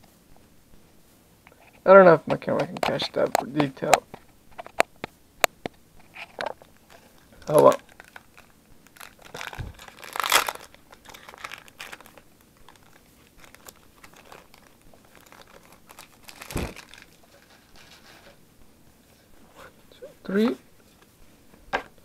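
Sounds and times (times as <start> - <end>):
foil wrapper crinkling and tearing: 6.1 - 18.4.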